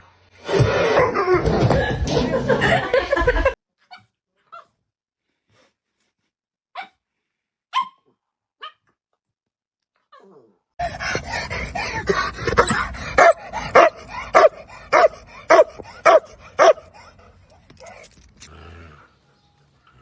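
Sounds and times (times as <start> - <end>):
dog barking: 7.7 - 8.0, 12.5 - 17.3.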